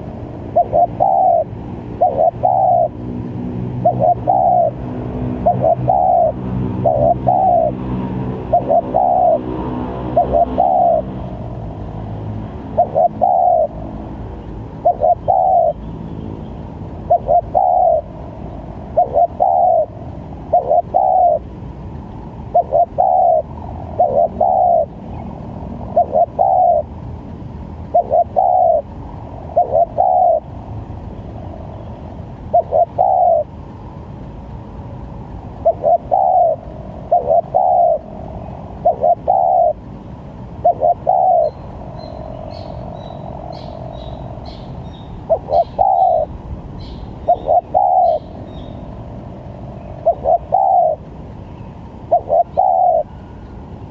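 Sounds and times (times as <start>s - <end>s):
dove cooing: 0.0s - 3.0s, 3.7s - 11.4s, 12.6s - 13.9s, 14.7s - 15.8s, 17.0s - 18.2s, 18.8s - 21.5s, 22.5s - 27.0s, 27.9s - 30.6s, 32.5s - 33.5s, 35.6s - 39.9s, 40.6s - 48.8s, 49.9s - 51.1s, 52.1s - 53.2s
steady background noise: 0.0s - 53.9s.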